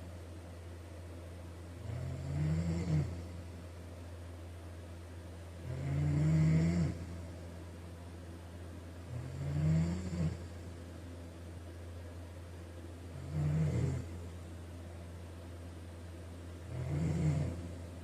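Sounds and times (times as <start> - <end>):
steady low hum: 0.0 - 18.0
man snoring: 1.8 - 3.2, 5.6 - 7.1, 9.1 - 10.5, 13.1 - 14.1, 16.7 - 17.7.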